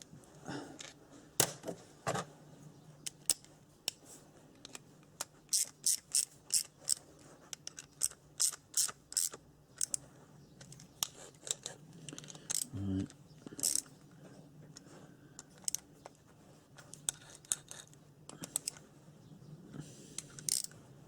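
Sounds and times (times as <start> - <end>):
small metallic clicks and ticks: 3.0 - 4.0, 4.6 - 14.0, 14.7 - 16.2, 16.8 - 18.9, 20.2 - 20.8.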